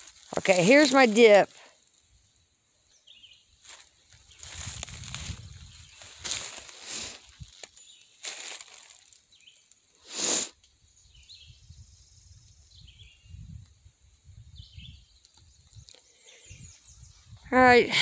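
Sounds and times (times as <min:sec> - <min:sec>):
faint bird chirps: 0:10.7 - 0:13.6, 0:14.3 - 0:17.5.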